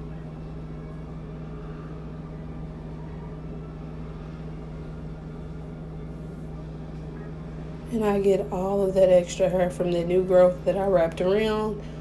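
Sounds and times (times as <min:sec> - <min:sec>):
low mechanical hum: 0:00.0 - 0:12.0.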